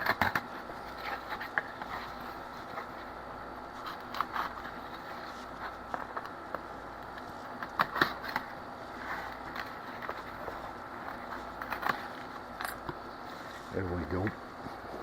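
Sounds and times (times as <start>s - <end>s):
steady background hum: 0.0s - 15.0s
cardboard scraping and tapping plastic: 9.2s - 13.0s.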